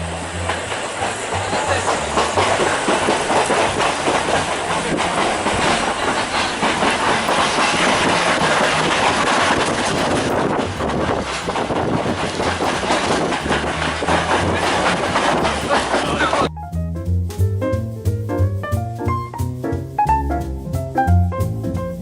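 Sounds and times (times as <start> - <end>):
train wheels rattling on track: 0.0 - 16.5.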